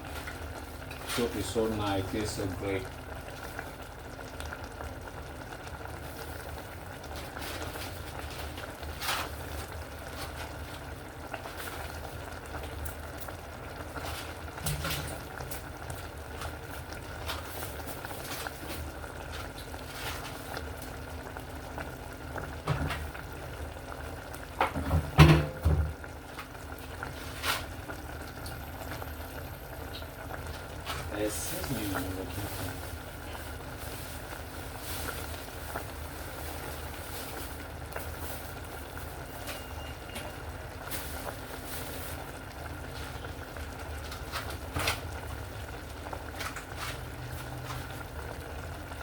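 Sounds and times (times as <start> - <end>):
soup bubbling with pops: 2.9 - 31.1.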